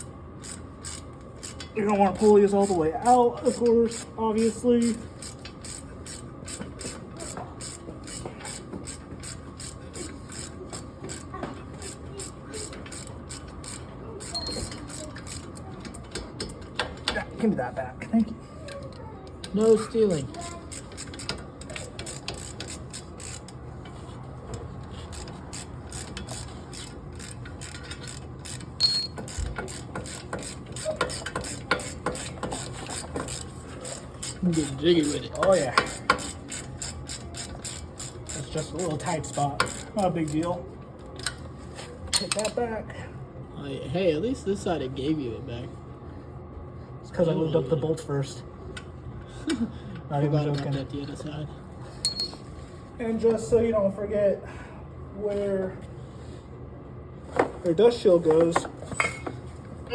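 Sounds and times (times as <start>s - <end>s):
ratchet wrench clicking: 0.0s - 16.9s, 20.3s - 23.6s, 24.5s - 40.5s.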